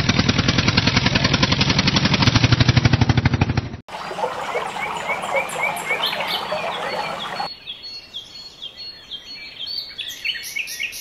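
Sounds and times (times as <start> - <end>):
small birds chirping: 4.0 - 11.0.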